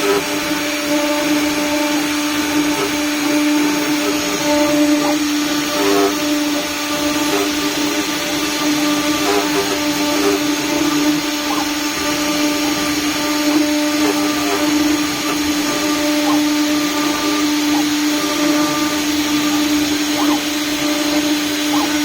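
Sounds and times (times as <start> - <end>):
router spindle high whine: 0.0 - 22.0
bit chirping in material: 10.4 - 22.0.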